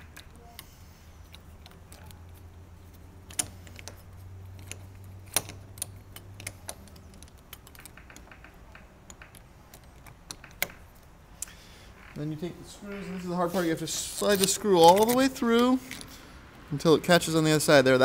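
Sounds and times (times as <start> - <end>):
metal lock parts clicking: 0.0 - 11.6, 12.8 - 16.2
low steady hum: 0.0 - 18.0.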